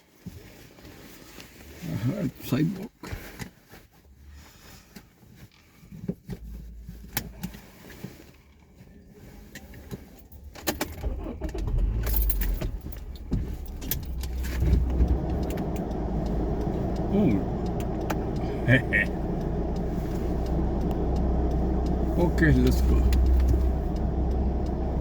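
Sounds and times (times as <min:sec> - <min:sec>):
car engine running: 0:06.3 - 0:25.0
keys jangling: 0:12.0 - 0:14.3.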